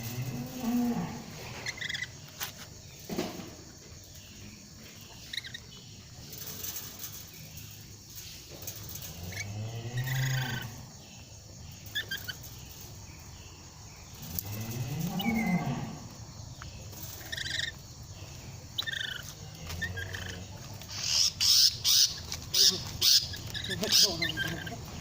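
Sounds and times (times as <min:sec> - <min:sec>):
low moo-like calls: 0:00.0 - 0:01.6, 0:09.1 - 0:10.9, 0:14.2 - 0:16.1
high bird chirps: 0:18.8 - 0:24.8.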